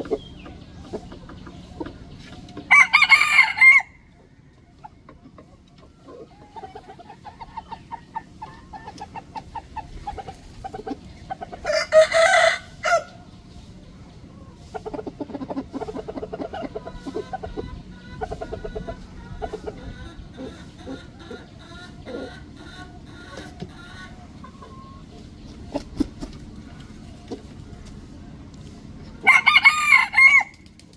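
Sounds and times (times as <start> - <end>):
fowl clucking: 0.0 - 30.7
rooster crowing: 2.7 - 4.0, 11.7 - 13.1, 29.2 - 30.6.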